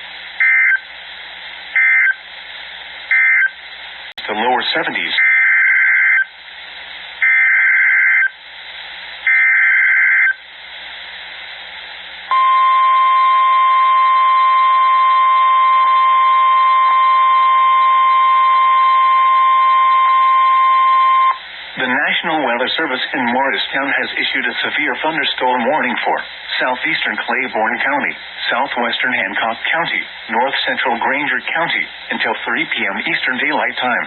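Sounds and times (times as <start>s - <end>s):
steady warning alarm tone: 0.4s - 0.8s, 1.8s - 2.2s, 3.1s - 3.6s, 5.2s - 6.3s, 7.2s - 8.4s, 9.3s - 10.4s, 12.3s - 21.5s.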